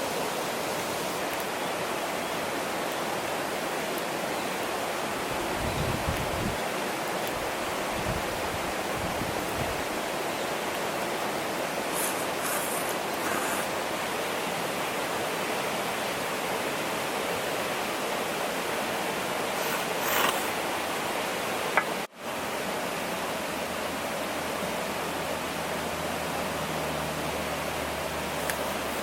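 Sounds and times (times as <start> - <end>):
brief rustle: 11.9 - 13.7.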